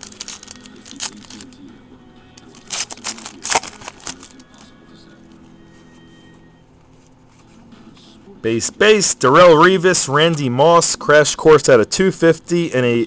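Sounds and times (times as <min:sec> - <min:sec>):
trading cards rustling and crinkling: 0:00.0 - 0:01.6, 0:02.4 - 0:04.8
quiet background music: 0:00.0 - 0:13.0.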